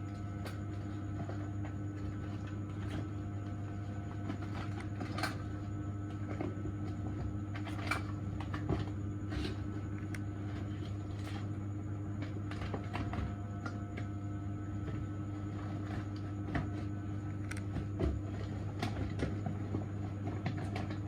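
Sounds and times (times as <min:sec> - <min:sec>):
dental equipment hum: 0:07.5 - 0:18.1.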